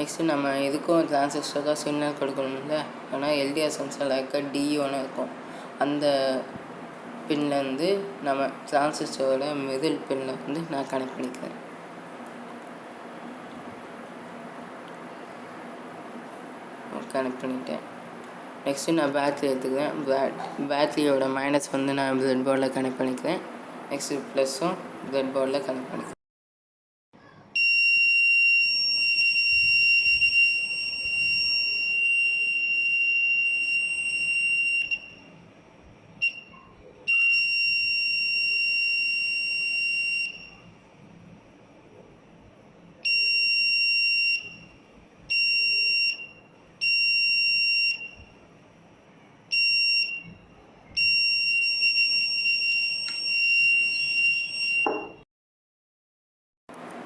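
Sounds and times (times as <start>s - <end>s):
high-pitched alarm buzzer beep: 27.6s - 35.3s, 36.2s - 40.6s, 43.0s - 48.3s, 49.5s - 50.4s, 51.0s - 55.2s.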